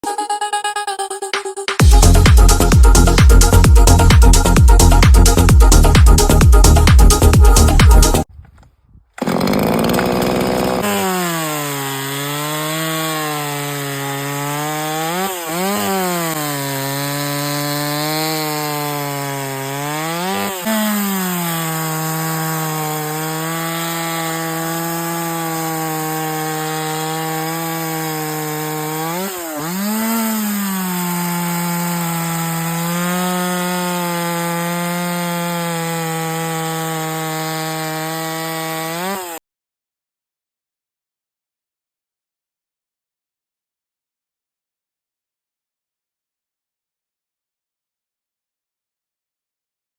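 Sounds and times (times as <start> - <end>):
chainsaw engine running: 1.8 - 39.4.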